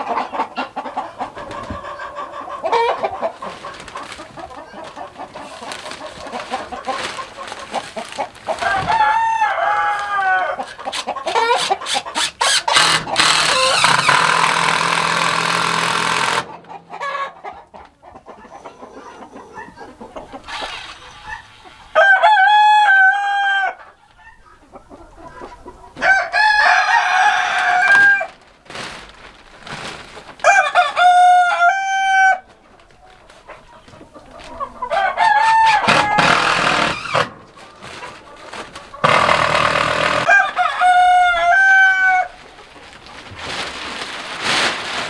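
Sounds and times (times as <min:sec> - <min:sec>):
rooster crowing: 0:08.5 - 0:14.2, 0:21.2 - 0:23.8, 0:26.0 - 0:28.3, 0:30.4 - 0:32.4, 0:34.9 - 0:37.3, 0:39.0 - 0:42.4.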